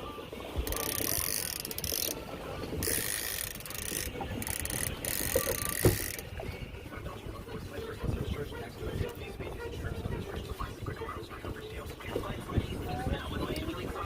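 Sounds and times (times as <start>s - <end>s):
fishing reel ratcheting: 0.6s - 2.2s, 2.8s - 6.3s.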